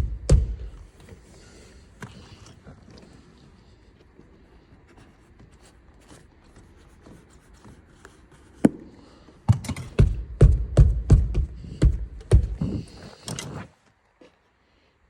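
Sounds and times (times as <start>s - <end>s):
sharp knocks and clatter: 0.0s - 1.0s, 9.5s - 13.5s
faint handling noise: 0.5s - 10.0s, 12.2s - 14.8s.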